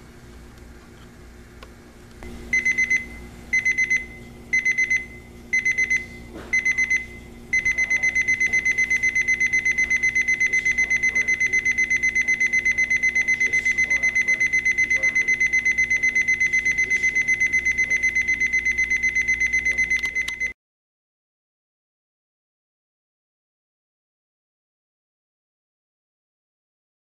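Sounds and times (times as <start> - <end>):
alarm clock beeping: 2.5 - 20.5.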